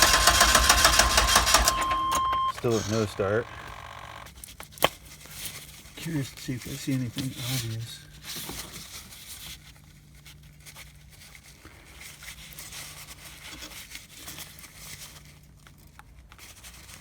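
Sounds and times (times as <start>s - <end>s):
low steady hum: 0.0s - 4.3s.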